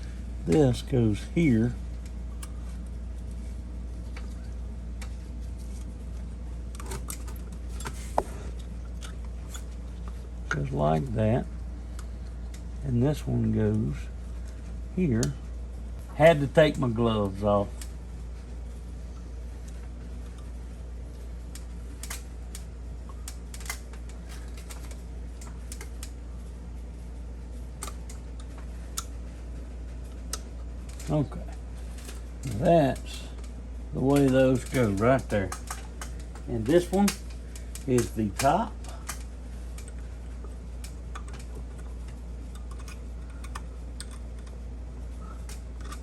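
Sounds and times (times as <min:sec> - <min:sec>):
steady low hum: 0:00.0 - 0:46.0
metal clips clicking: 0:21.6 - 0:26.2, 0:34.1 - 0:40.0, 0:42.5 - 0:44.6.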